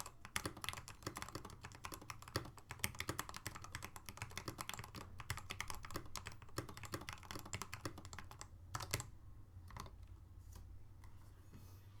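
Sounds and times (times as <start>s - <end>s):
typing on mechanical keyboard: 0.0s - 10.0s.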